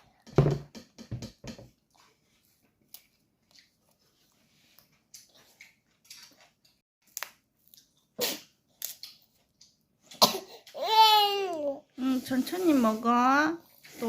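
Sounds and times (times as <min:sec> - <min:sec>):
baby coughing: 0:10.2 - 0:11.1
baby whining: 0:10.7 - 0:11.8.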